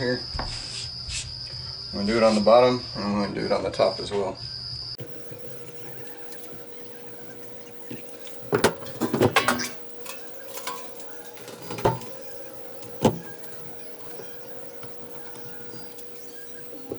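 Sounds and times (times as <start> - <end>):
electrical hum: 4.8 - 16.9.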